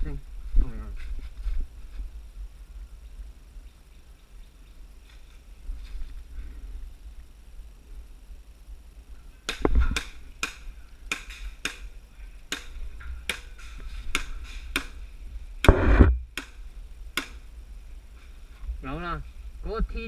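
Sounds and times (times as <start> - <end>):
loud thumps: 15.6 - 16.5.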